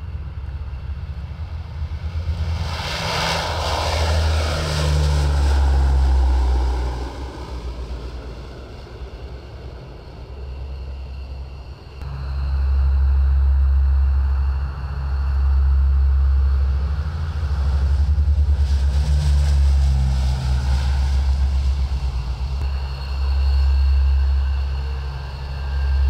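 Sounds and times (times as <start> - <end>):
aircraft engines at takeoff power: 0.0 - 26.0.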